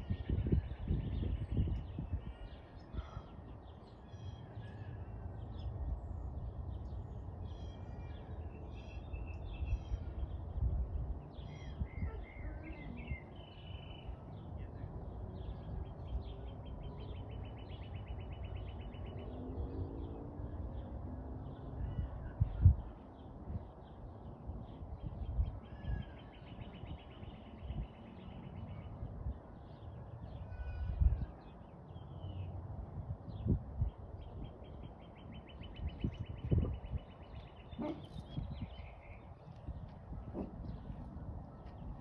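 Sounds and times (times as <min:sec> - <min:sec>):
low wind rumble on microphone: 0:00.0 - 0:03.8, 0:04.5 - 0:42.0
birds chirping and calling: 0:34.2 - 0:41.0.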